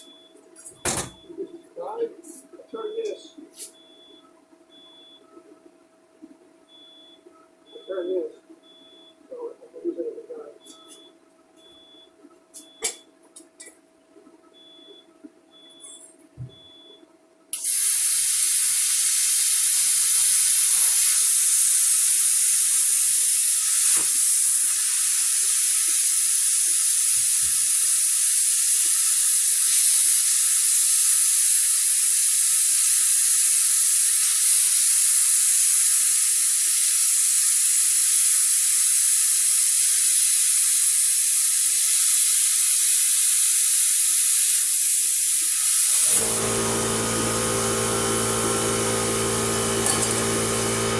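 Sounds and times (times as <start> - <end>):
plasma cutter torch hissing: 17.6 - 50.9.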